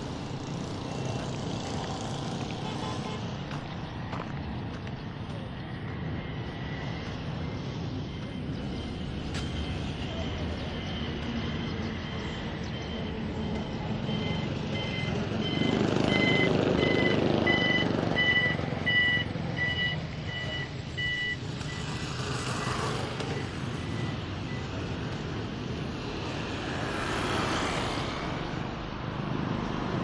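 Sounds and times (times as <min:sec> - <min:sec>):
traffic noise: 0:00.0 - 0:30.0
vehicle warning beeper: 0:08.1 - 0:25.0.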